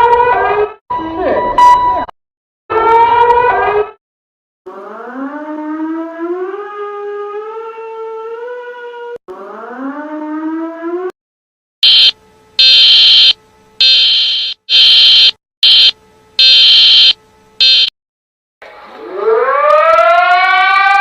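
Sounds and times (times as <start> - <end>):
shrill electronic alarm blasts: 11.8 - 17.9
siren tone rising: 11.8 - 17.9, 19.0 - 21.0.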